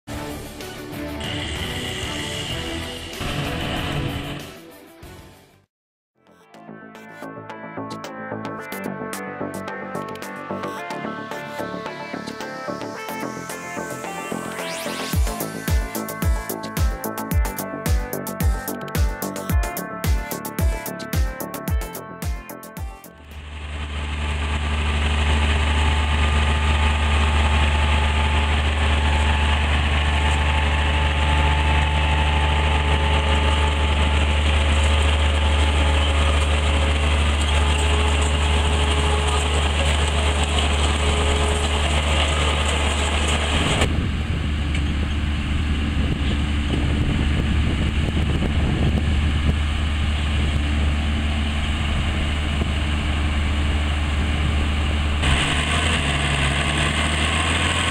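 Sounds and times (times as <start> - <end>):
tractor engine drone: 0.1 - 4.6, 9.4 - 57.9
potato harvester rattling: 24.0 - 43.8.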